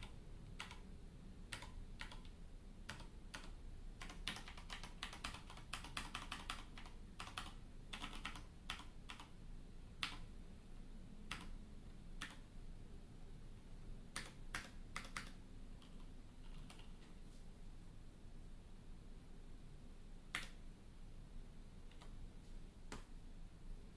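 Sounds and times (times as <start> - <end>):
mechanical keyboard typing: 0.0 - 0.9, 1.5 - 9.3, 11.3 - 11.6, 14.1 - 17.0.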